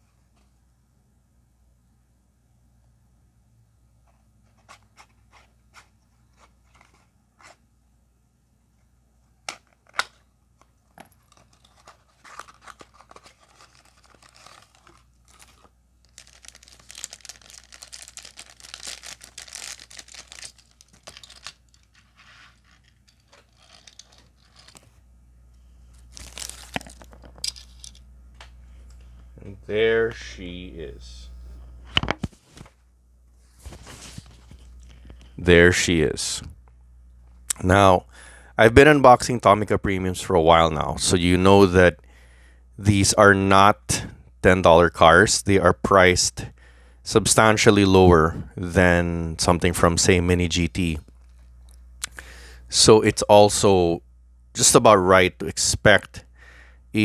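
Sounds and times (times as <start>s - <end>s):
plastic packaging clicks and snaps: 9.4s - 22.0s
plastic crinkling and tearing: 11.1s - 24.9s, 26.0s - 27.4s.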